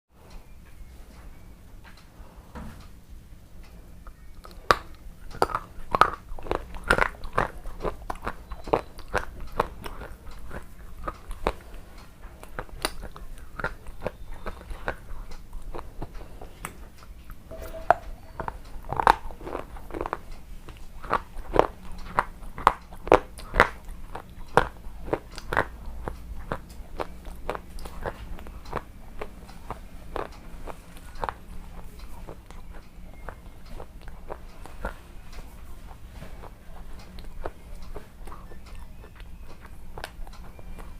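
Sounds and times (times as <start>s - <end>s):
rock crunching between teeth: 4.4s - 17.4s.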